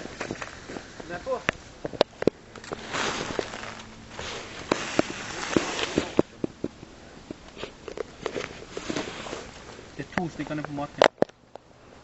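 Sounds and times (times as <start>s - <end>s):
footsteps rustling through undergrowth: 0.0s - 11.0s.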